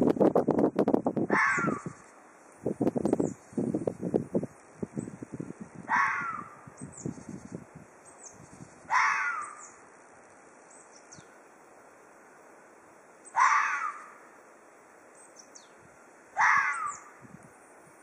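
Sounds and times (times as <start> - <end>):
fox cries falling in pitch: 1.3 - 2.0, 5.9 - 6.6, 8.9 - 9.6, 13.4 - 14.2, 16.4 - 17.1.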